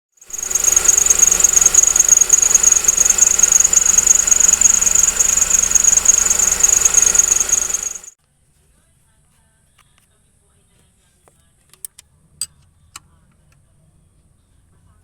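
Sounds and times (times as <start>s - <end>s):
engine running: 0.1s - 8.1s.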